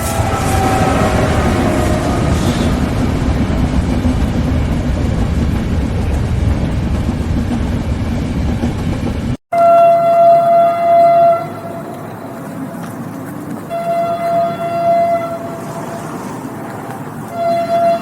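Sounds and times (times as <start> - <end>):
train horn blasts: 0.0 - 3.3, 9.5 - 12.9, 13.6 - 16.4, 17.3 - 18.0
moving train rumble: 0.0 - 18.0.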